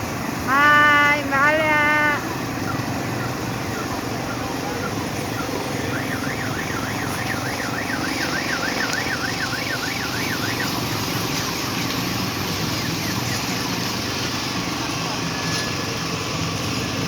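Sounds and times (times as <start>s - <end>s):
outdoor background noise: 0.0s - 17.0s
electronic siren-like warble: 1.8s - 15.8s.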